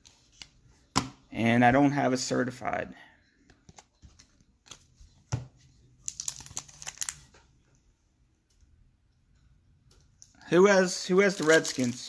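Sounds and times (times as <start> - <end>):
wrappers crinkling: 6.1 - 7.3, 11.2 - 12.0.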